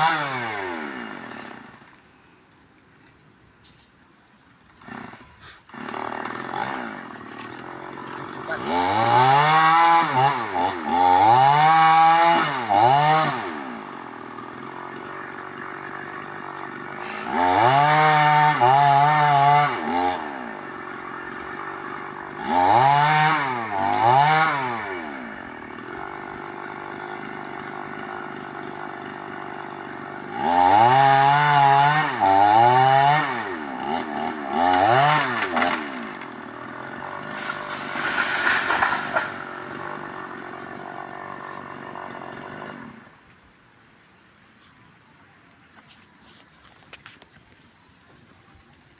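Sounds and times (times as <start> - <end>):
small engine revving in blips: 0.0 - 2.0, 4.8 - 29.2, 30.3 - 43.0.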